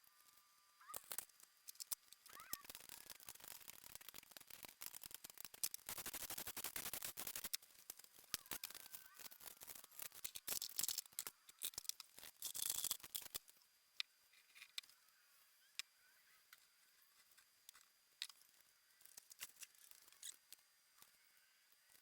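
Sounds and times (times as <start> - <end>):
tools clicking on metal parts: 0.9 - 13.4
rapid even clicking: 1.0 - 13.4.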